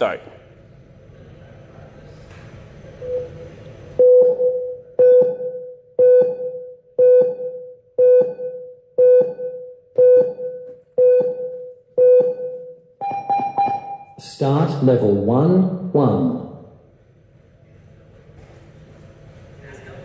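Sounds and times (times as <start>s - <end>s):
electronic countdown beeps: 4.0s - 14.2s.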